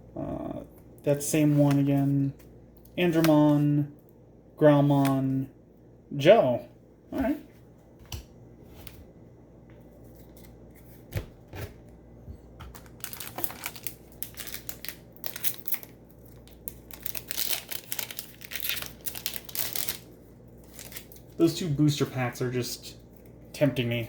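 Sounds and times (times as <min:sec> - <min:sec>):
wrapper crackling and crinkling: 0:12.7 - 0:21.4.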